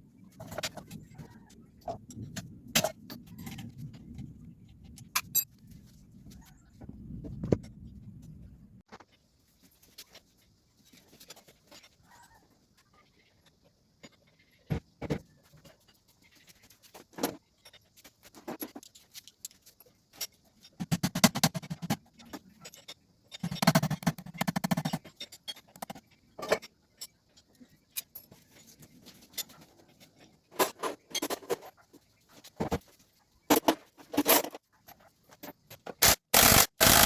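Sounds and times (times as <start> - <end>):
rapid clicking: 36.0 - 37.0.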